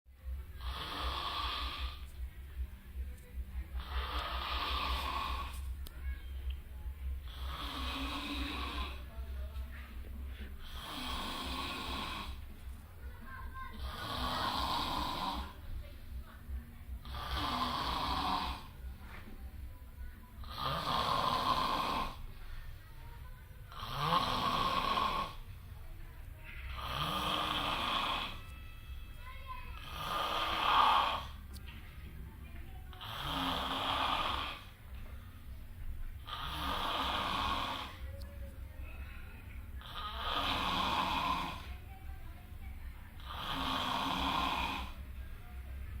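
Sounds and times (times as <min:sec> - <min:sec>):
low steady hum: 0:00.1 - 0:30.6, 0:31.2 - 0:44.0
person snoring: 0:00.6 - 0:02.0, 0:03.8 - 0:05.6, 0:07.3 - 0:09.0, 0:10.6 - 0:12.4, 0:13.8 - 0:15.6, 0:17.0 - 0:18.7, 0:20.4 - 0:22.2, 0:23.7 - 0:25.4, 0:26.8 - 0:28.4, 0:29.8 - 0:31.4, 0:33.0 - 0:34.7, 0:36.3 - 0:38.0, 0:39.8 - 0:41.7, 0:43.2 - 0:45.0.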